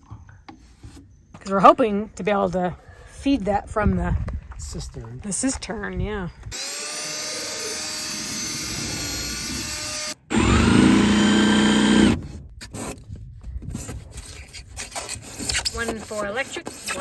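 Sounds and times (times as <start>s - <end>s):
power drill whining: 6.5s - 12.4s
rubbing and scraping: 11.3s - 17.0s.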